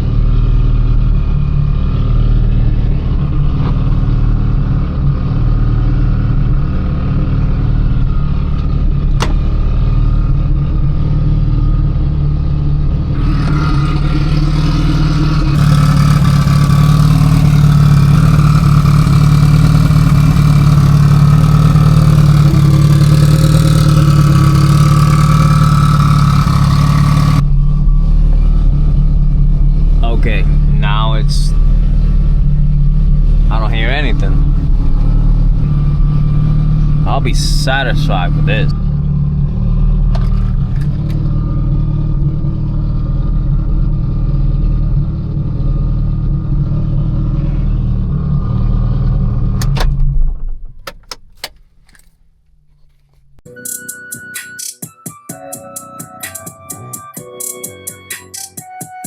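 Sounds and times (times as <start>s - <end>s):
car engine drone: 0.0s - 53.5s
road noise: 0.0s - 53.5s.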